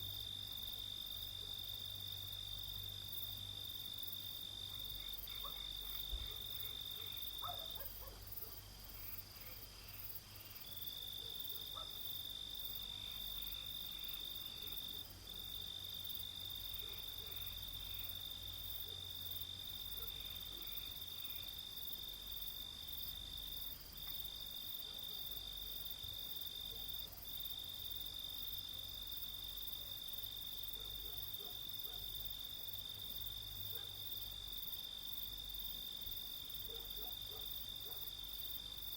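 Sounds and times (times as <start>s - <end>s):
crickets chirping: 0.0s - 38.9s
rapid pulsing insect call: 0.0s - 38.9s.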